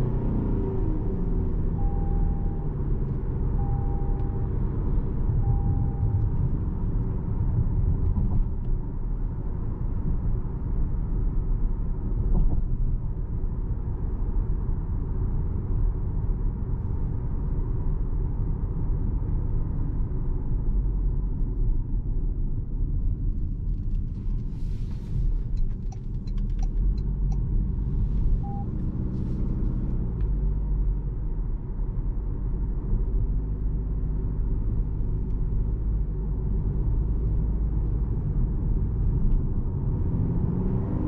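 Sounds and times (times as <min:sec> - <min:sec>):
car road rumble: 0:00.0 - 0:41.0
short beeps: 0:01.8 - 0:02.8, 0:03.5 - 0:04.5, 0:05.4 - 0:06.3, 0:28.4 - 0:28.7.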